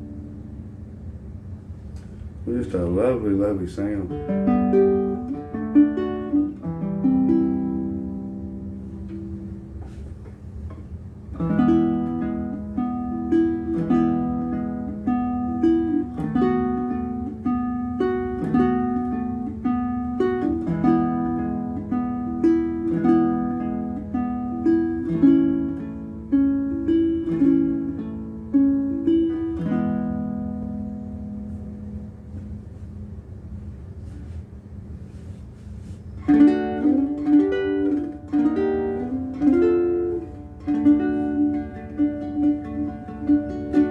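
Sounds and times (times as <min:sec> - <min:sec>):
ukulele fingerpicked melody: 0:04.0 - 0:32.9, 0:35.1 - 0:43.9.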